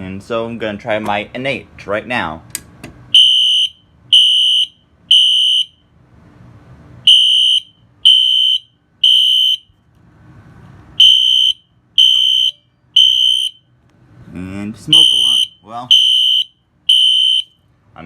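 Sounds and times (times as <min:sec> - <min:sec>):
fire alarm high-pitched beeps: 0:03.2 - 0:05.9, 0:07.1 - 0:09.7, 0:11.0 - 0:13.7, 0:14.9 - 0:17.6.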